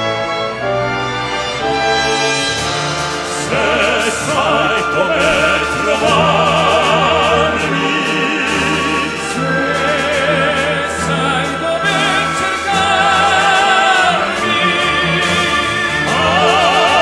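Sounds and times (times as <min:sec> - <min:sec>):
orchestral accompaniment: 0:00.0 - 0:17.0
male vocal group singing operatically: 0:03.2 - 0:17.0.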